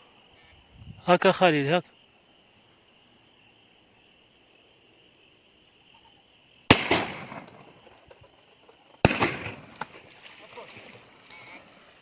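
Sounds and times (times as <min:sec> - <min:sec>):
high insect chirring: 0:00.0 - 0:09.0
shotgun blast: 0:06.7 - 0:07.7, 0:09.0 - 0:10.0.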